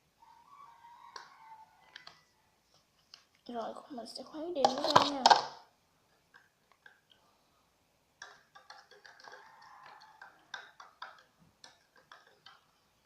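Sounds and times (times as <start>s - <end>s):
stirrer clicking against container: 8.2s - 12.8s
stirrer scraping: 8.2s - 13.0s.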